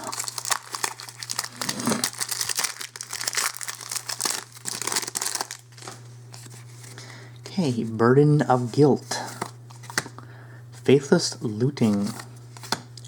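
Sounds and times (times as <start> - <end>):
foil wrapper tearing and crinkling: 0.0 - 6.5.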